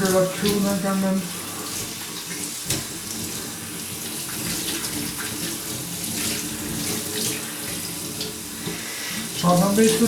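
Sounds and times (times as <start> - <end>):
cloth rinsed under water: 0.0 - 10.0
tap water running: 0.0 - 10.0.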